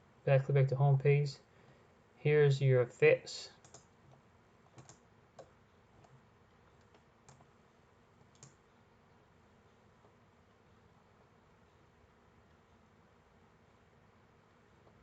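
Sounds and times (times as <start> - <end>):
faint computer mouse clicks: 3.6 - 6.2, 8.2 - 8.6.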